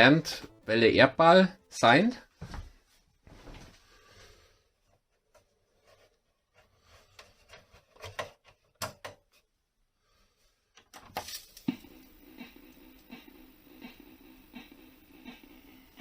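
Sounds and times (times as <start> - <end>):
steady low hum: 11.6 - 16.0.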